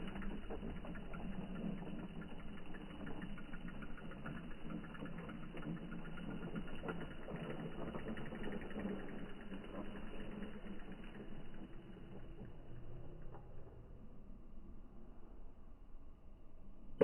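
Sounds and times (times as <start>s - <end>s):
toy truck motor running: 0.0s - 12.5s.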